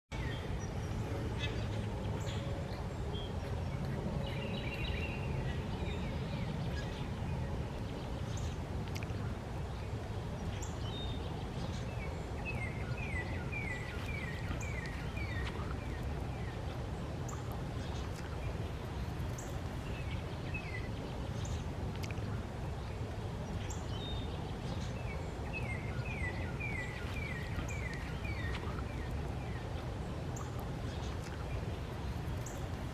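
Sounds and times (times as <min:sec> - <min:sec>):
low outdoor rumble: 0:00.1 - 0:32.9
songbird singing falling notes: 0:10.4 - 0:22.4, 0:23.5 - 0:31.7.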